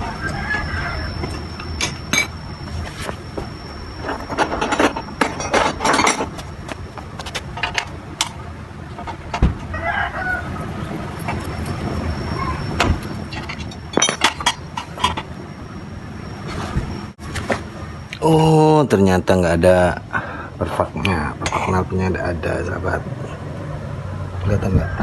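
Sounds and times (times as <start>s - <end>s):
hand tools clinking on metal: 0.1s - 2.4s, 4.0s - 6.5s, 12.6s - 15.3s.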